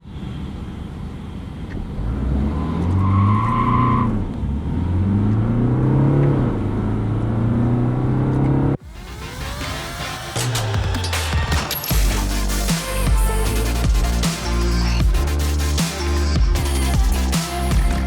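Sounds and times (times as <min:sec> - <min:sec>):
diesel engine accelerating: 0:04.1 - 0:18.0
steady high tone: 0:08.8 - 0:18.0.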